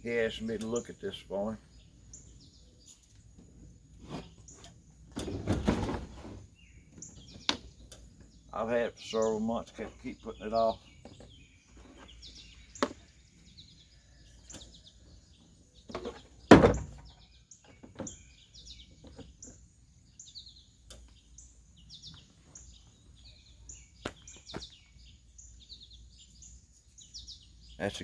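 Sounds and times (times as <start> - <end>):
small birds chirping: 0.0 - 28.0
loud thump: 16.5 - 17.0.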